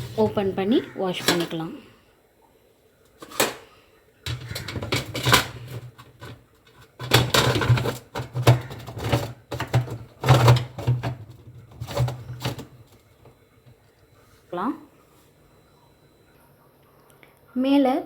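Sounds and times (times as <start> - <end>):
dishwasher parts clattering: 0.0 - 1.7, 3.2 - 3.7, 4.3 - 13.4.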